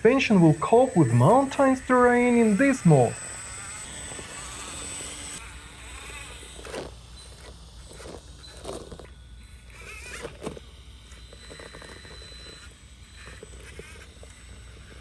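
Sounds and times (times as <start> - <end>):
tyres scraping on stone: 4.1 - 14.5.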